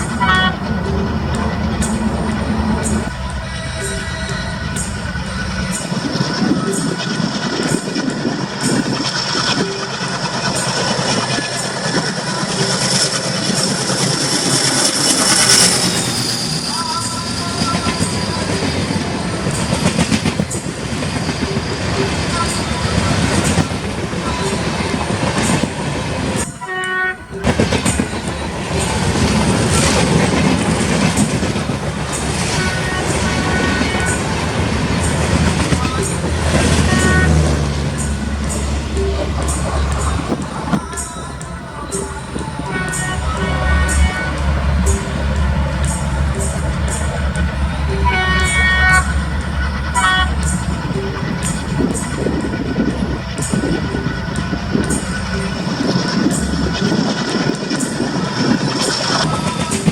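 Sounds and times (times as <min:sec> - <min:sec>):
short horn notes: 0:00.0 - 0:05.0
diesel locomotive rumble: 0:00.0 - 0:59.9
steady high whine: 0:00.0 - 0:59.9
train noise: 0:00.0 - 0:59.9
wheels clacking over rail joints: 0:00.0 - 0:59.9.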